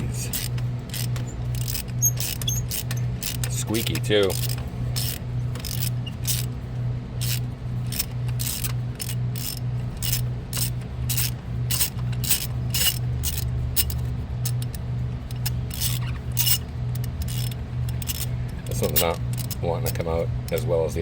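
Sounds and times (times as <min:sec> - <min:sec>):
low pulsing hum: 0:00.0 - 0:21.0
rubber boot squeaking: 0:01.2 - 0:03.2.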